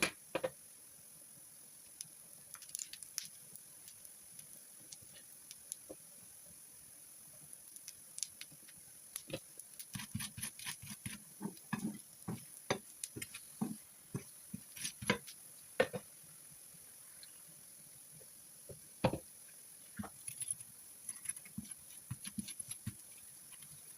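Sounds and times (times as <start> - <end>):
food preparation taps and squelches: 0.0 - 0.6, 9.2 - 16.1, 18.7 - 19.3, 21.5 - 23.9.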